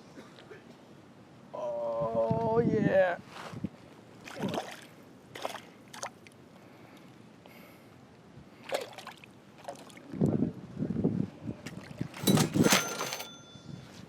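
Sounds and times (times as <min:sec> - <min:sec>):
water lapping against boat: 0:04.2 - 0:06.3, 0:08.5 - 0:10.1.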